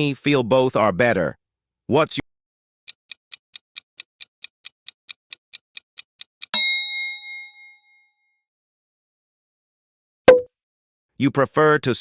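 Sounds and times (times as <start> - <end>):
clock ticking: 2.9 - 6.5.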